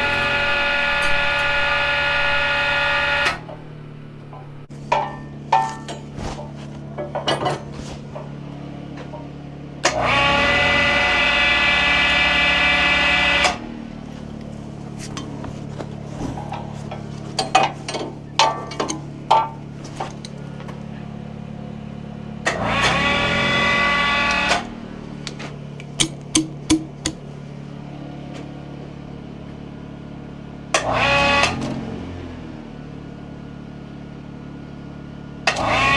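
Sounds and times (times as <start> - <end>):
electric winch motor whine: 0.0 - 4.8, 9.8 - 25.4, 30.7 - 32.6, 35.4 - 35.9
low hum: 0.0 - 4.8.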